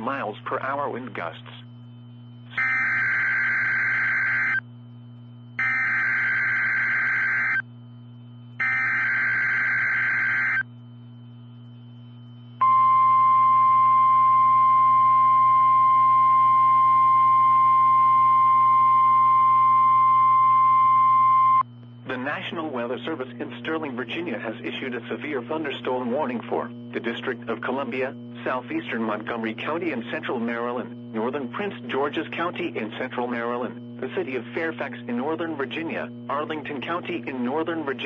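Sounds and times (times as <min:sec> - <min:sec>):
warbling digital data tones: 0:02.0 - 0:04.6, 0:05.6 - 0:07.7, 0:08.6 - 0:10.7
single-pitch warning alarm tone: 0:02.5 - 0:04.6, 0:05.6 - 0:07.7, 0:08.6 - 0:10.6, 0:12.6 - 0:21.6.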